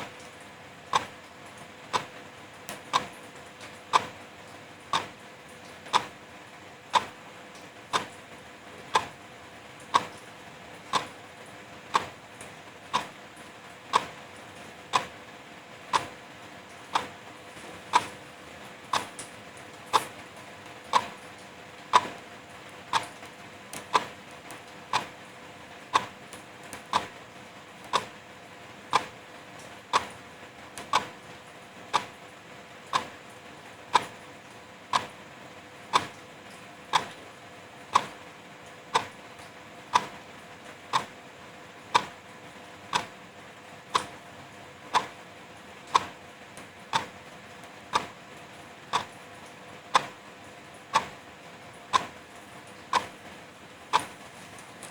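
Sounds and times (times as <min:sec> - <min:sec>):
wall clock ticking: 0:00.9 - 0:01.2, 0:01.9 - 0:03.2, 0:03.8 - 0:04.2, 0:04.9 - 0:05.2, 0:05.9 - 0:06.2, 0:06.9 - 0:07.2, 0:07.9 - 0:08.2, 0:08.9 - 0:09.2, 0:09.9 - 0:10.2, 0:10.9 - 0:11.2, 0:11.9 - 0:12.2, 0:12.8 - 0:13.2, 0:13.9 - 0:14.2, 0:14.9 - 0:15.2, 0:15.8 - 0:16.2, 0:16.9 - 0:17.2, 0:17.8 - 0:18.2, 0:18.8 - 0:19.3, 0:19.9 - 0:20.2, 0:20.8 - 0:22.3, 0:22.9 - 0:28.3, 0:28.9 - 0:29.2, 0:29.8 - 0:30.2, 0:30.8 - 0:31.2, 0:31.9 - 0:32.2, 0:32.9 - 0:33.2, 0:33.9 - 0:34.2, 0:34.9 - 0:35.2, 0:35.9 - 0:36.2, 0:36.9 - 0:37.2, 0:37.9 - 0:38.2, 0:38.9 - 0:39.2, 0:39.9 - 0:40.2, 0:40.9 - 0:41.2, 0:41.9 - 0:42.3, 0:42.9 - 0:43.2, 0:43.9 - 0:44.2, 0:44.9 - 0:45.2, 0:45.9 - 0:46.2, 0:46.9 - 0:47.2, 0:47.9 - 0:48.3, 0:48.9 - 0:49.2, 0:49.9 - 0:50.2, 0:50.9 - 0:51.2, 0:51.9 - 0:52.2, 0:52.9 - 0:53.2, 0:53.9 - 0:54.2.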